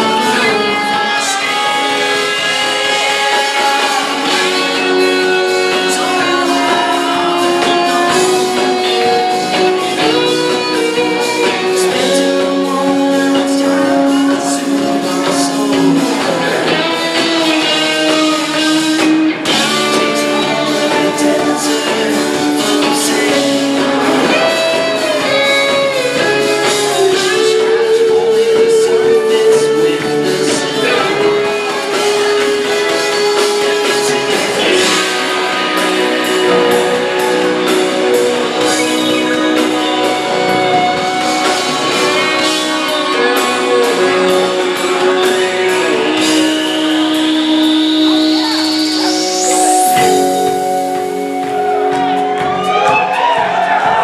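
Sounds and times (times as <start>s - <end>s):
guitar: 0.0s - 54.0s
live rock band playing: 0.0s - 54.0s
person singing: 0.0s - 54.0s.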